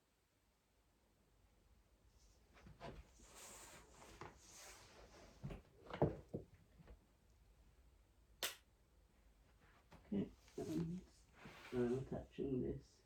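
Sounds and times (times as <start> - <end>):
sharp click: 8.4 - 8.7
light rustle of handling: 9.5 - 12.2.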